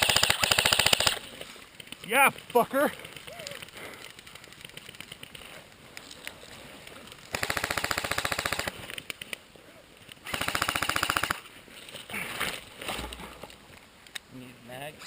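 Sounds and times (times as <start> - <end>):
airsoft rifle firing bursts: 0.0 - 1.3, 7.3 - 8.8, 10.2 - 11.4.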